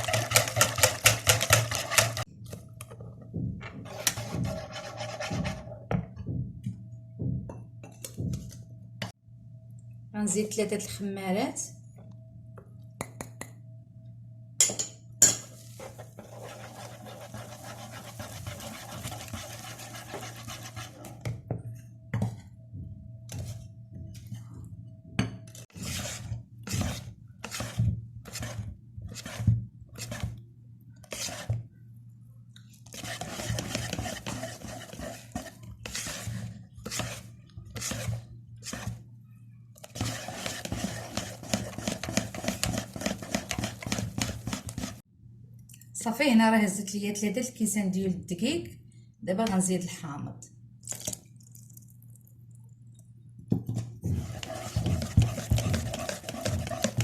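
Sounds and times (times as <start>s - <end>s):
utensil scraping mixing bowl: 0.0s - 2.3s, 3.9s - 5.8s, 15.7s - 21.2s, 25.7s - 30.4s, 31.0s - 31.6s, 32.9s - 39.0s, 39.8s - 45.0s, 54.1s - 57.0s.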